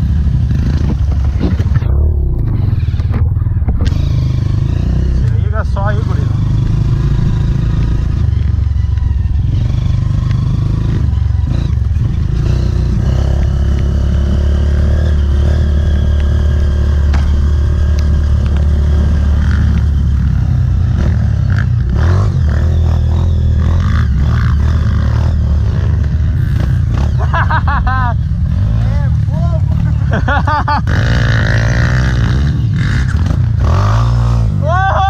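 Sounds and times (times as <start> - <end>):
motorcycle engine running: 0.0 - 35.0
clatter over rough ground: 0.5 - 14.0, 16.0 - 21.9.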